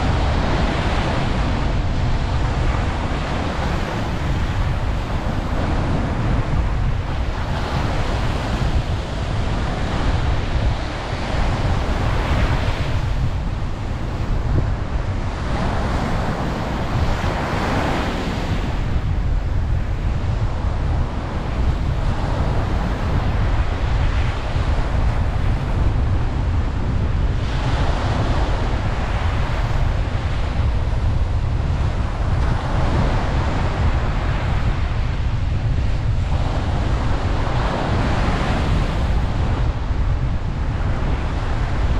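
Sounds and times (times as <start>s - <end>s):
ocean waves breaking: 0.0s - 41.9s
steady low surf rumble: 0.0s - 41.9s.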